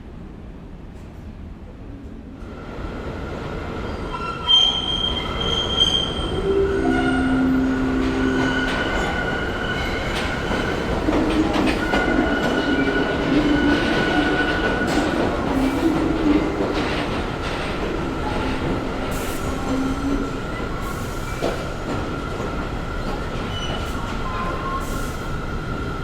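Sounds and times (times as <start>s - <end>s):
subway train rumbling: 0.0s - 26.0s
train wheels squealing: 3.8s - 6.9s, 18.3s - 26.0s.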